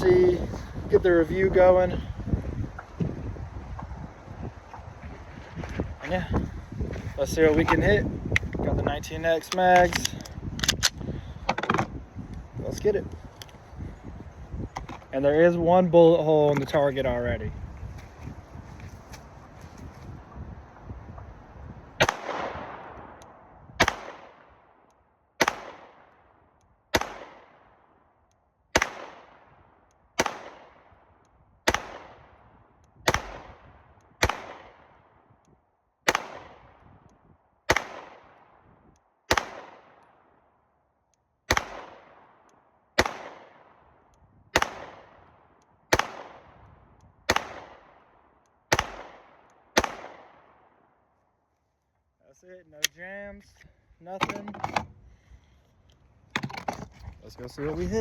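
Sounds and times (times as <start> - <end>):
pistol shots with echo: 22.0 - 24.8, 25.4 - 27.8, 28.7 - 31.0, 31.6 - 32.4, 33.0 - 35.1, 36.1 - 36.8, 37.7 - 38.6, 39.3 - 40.3, 41.5 - 43.9, 44.5 - 46.6, 47.3 - 50.8.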